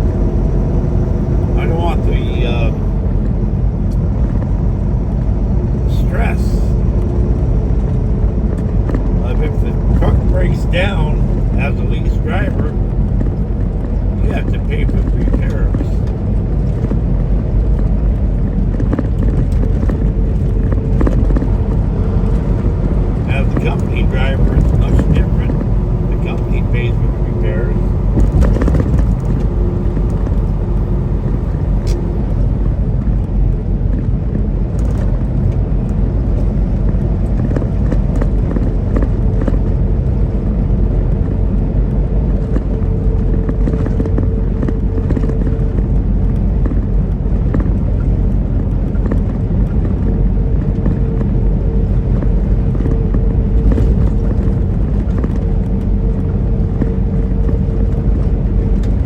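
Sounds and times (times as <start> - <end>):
road noise: 0.0 - 59.0
truck diesel engine drone: 0.0 - 59.0
faint steady whine: 18.8 - 33.6.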